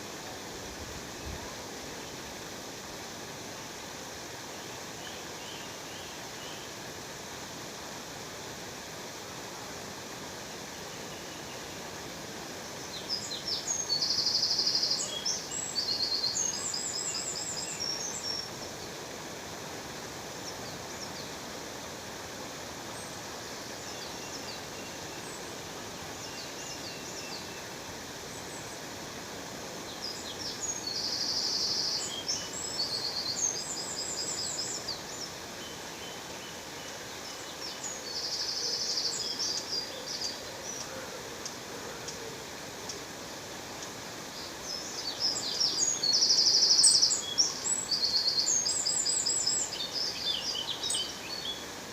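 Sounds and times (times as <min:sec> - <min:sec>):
songbird chirps and trills: 0:10.0 - 0:41.6, 0:42.7 - 0:51.9.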